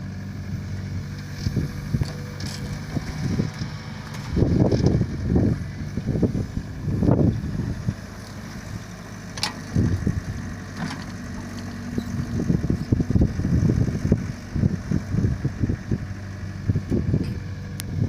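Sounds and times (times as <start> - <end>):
excavator diesel engine running: 0.0 - 18.0
low thuds of digging: 1.1 - 8.6.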